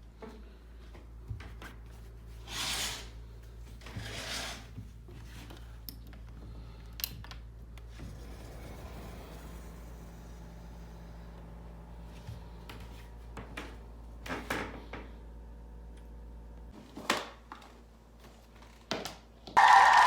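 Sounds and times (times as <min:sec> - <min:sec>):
low hum: 0:05.8 - 0:16.7.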